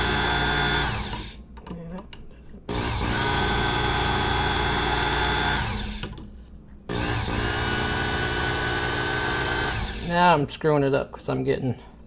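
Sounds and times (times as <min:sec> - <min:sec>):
belt sharpener motor running: 0:00.0 - 0:01.4, 0:02.7 - 0:06.1, 0:06.9 - 0:10.1.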